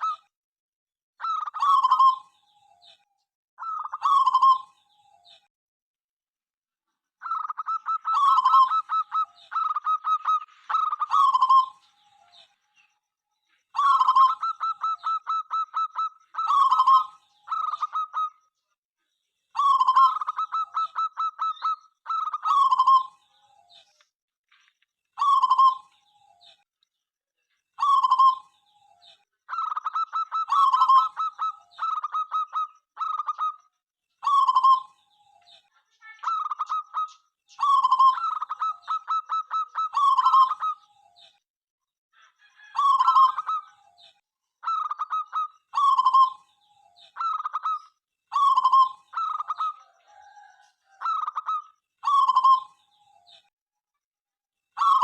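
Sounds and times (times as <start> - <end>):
dove cooing: 1.2 - 2.3, 3.6 - 4.7, 7.2 - 11.8, 13.8 - 18.4, 19.6 - 23.2, 25.2 - 25.9, 27.8 - 28.5, 29.5 - 33.5, 34.2 - 35.0, 36.2 - 41.0, 42.6 - 44.0, 44.6 - 46.5, 47.2 - 52.8, 54.8 - 55.0.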